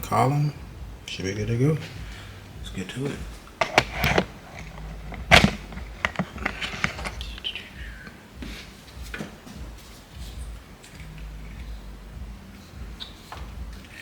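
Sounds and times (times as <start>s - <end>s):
plastic parts clicking and knocking: 3.6s - 7.2s.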